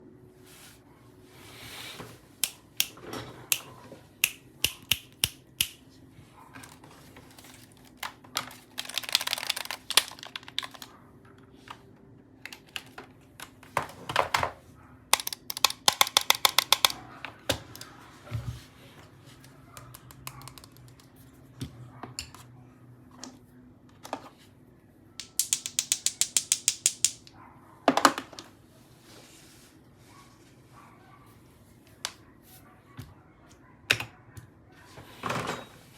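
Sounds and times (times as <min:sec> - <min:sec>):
keyboard typing: 0:15.2 - 0:17.0, 0:19.7 - 0:21.2.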